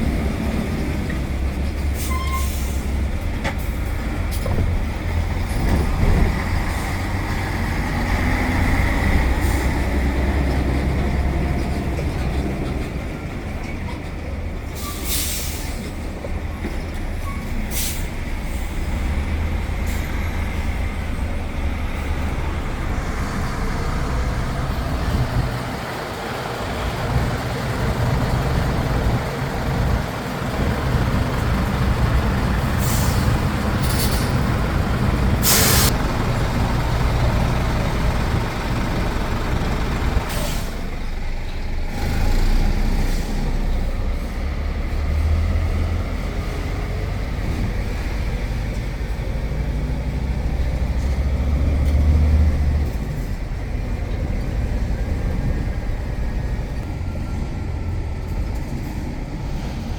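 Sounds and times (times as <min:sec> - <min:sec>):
truck diesel engine running: 0:17.8 - 0:59.9
compressed air hisses: 0:35.4 - 0:35.9.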